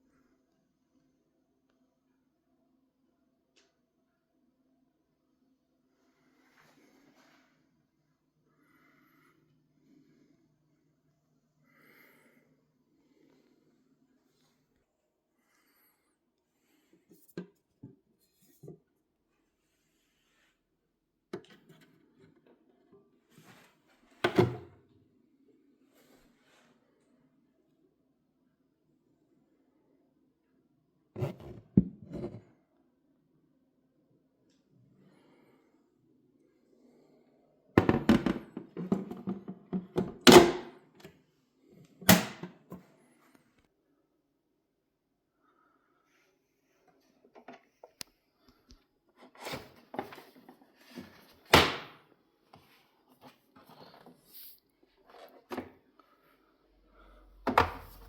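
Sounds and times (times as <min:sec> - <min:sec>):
hard objects knocking and clattering: 0:37.8 - 0:40.6.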